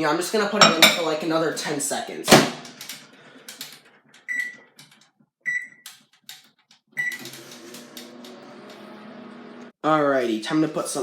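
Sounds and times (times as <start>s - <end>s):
microwave keypad beeping: 4.3s - 4.6s, 5.5s - 5.8s, 7.0s - 7.3s
microwave humming: 7.0s - 9.7s.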